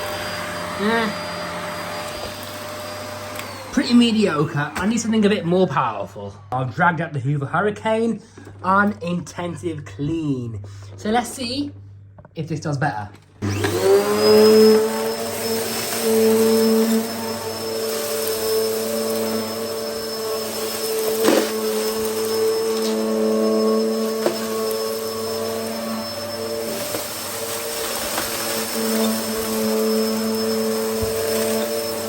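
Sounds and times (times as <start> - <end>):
vacuum cleaner whine: 0.0 - 5.4, 13.4 - 32.0.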